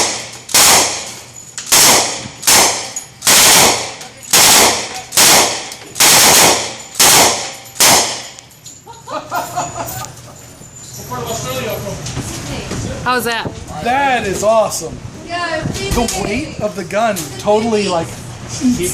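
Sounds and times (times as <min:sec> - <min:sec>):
submachine gun automatic bursts: 0:00.0 - 0:01.1, 0:01.7 - 0:08.3.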